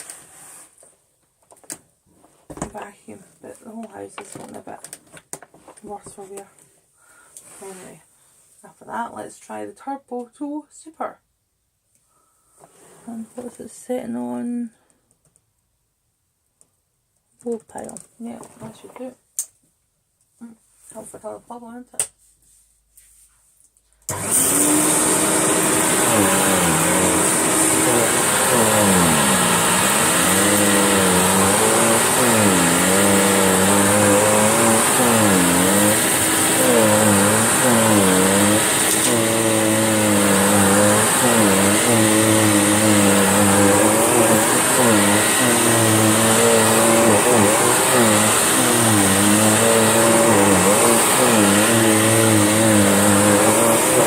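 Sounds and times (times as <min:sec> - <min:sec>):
vacuum cleaner running on carpet: 0:24.1 - 0:54.0
vacuum cleaner switching on: 0:24.1 - 0:54.0.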